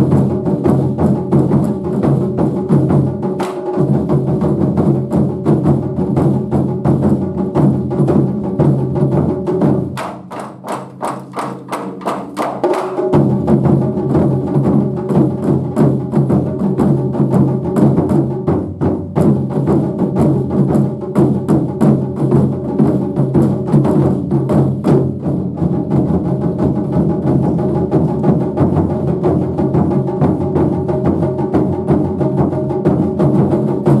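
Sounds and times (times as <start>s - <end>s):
taiko drum ensemble: 0.0s - 34.0s
sharp clacking strokes: 10.0s - 13.2s.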